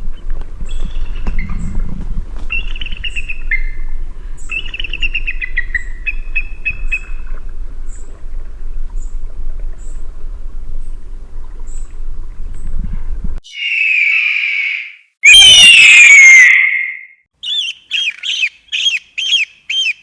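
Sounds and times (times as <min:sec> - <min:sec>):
eagle calling: 0:13.4 - 0:20.0.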